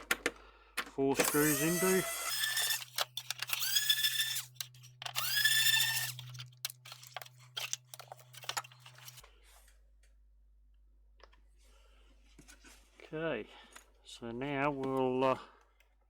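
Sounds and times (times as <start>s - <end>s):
screwdriver whine: 1.2s - 9.2s
small screws clicking: 1.2s - 9.2s.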